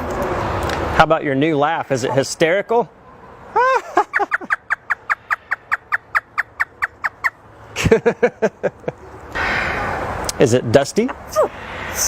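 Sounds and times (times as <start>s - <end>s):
parrot imitating laughter: 3.5s - 7.3s.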